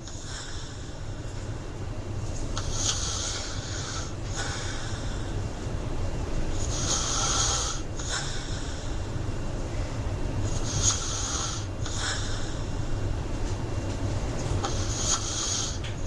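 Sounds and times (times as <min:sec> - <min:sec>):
person snoring: 0:02.6 - 0:05.4, 0:06.6 - 0:09.1, 0:10.4 - 0:12.8, 0:14.6 - 0:15.9.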